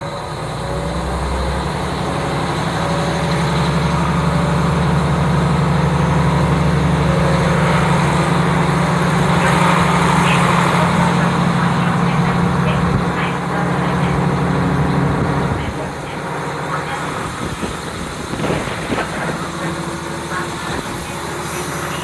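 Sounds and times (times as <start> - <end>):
railcar diesel engine drone: 0.0 - 22.0
wind noise: 8.4 - 22.0.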